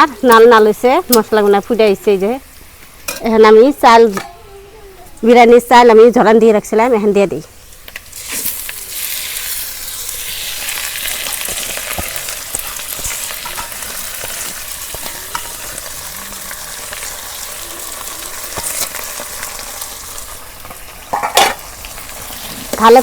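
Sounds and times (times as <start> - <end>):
rice sizzling in oil: 7.6 - 23.0.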